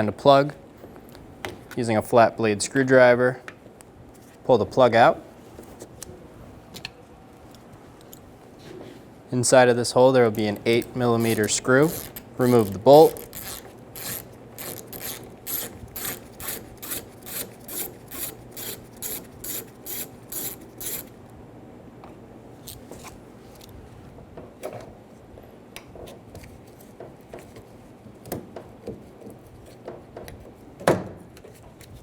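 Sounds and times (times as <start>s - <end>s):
handling noises: 10.0s - 19.8s
ratchet wrench clicking: 10.4s - 21.1s.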